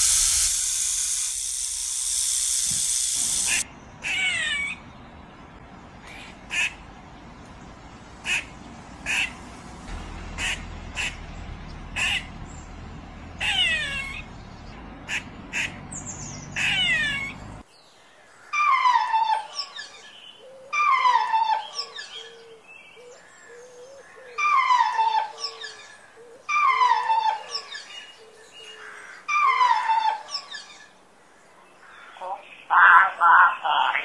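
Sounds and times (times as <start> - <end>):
loud steady hiss: 0.0 - 3.7
harsh animal calls: 13.3 - 14.5, 15.1 - 17.6.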